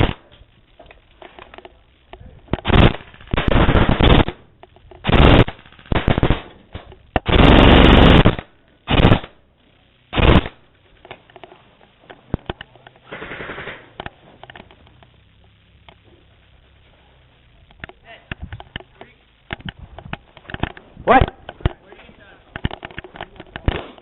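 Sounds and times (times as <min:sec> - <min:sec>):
scattered clicks: 0:00.0 - 0:07.4, 0:10.2 - 0:16.1, 0:17.6 - 0:24.0
airsoft gun firing bursts: 0:02.6 - 0:04.4, 0:05.0 - 0:06.5, 0:07.2 - 0:09.4, 0:10.1 - 0:10.6, 0:13.0 - 0:14.0.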